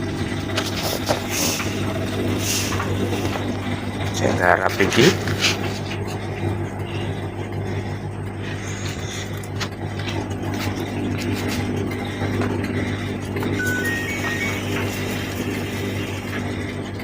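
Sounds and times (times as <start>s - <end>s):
washing machine humming: 0.0s - 17.0s
electronic beep: 13.6s - 15.3s.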